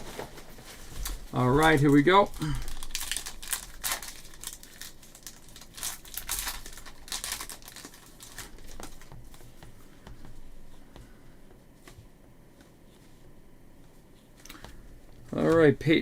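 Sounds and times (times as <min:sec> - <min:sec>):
foil wrapper crinkling: 0:00.0 - 0:09.4
cards rustling: 0:00.0 - 0:09.7.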